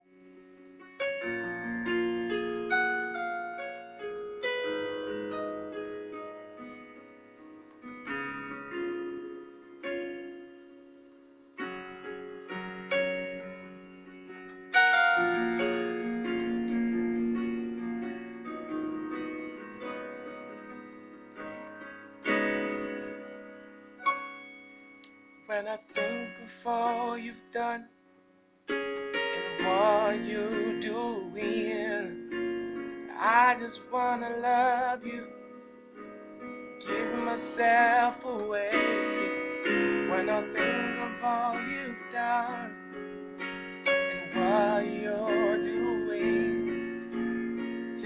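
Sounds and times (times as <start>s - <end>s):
slow keyboard chords and notes: 0.0s - 48.0s.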